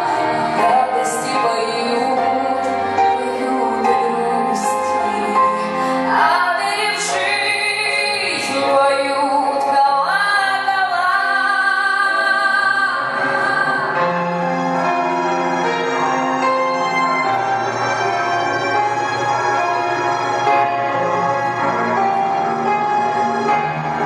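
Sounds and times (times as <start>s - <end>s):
woman singing with vibrato: 0.0s - 14.2s
instrumental accompaniment: 0.0s - 24.0s.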